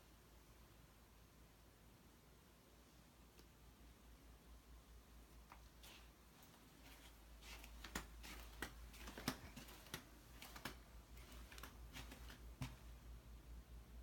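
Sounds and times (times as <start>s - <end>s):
faint low hum: 0.0s - 14.0s
light clicks and taps: 5.4s - 12.8s.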